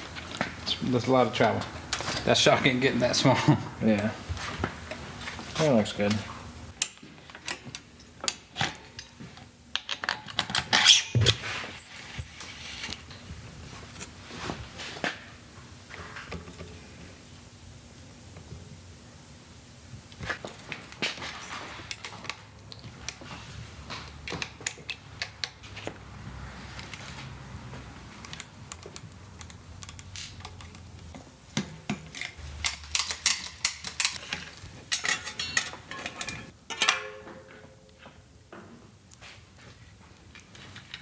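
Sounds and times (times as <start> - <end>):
hand tools clicking and clinking: 28.2 - 38.0.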